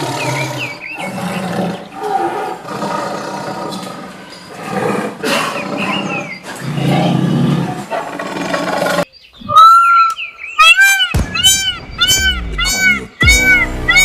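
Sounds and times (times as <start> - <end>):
big cat roaring and growling: 0.0 - 9.0
cat meowing: 10.6 - 14.0.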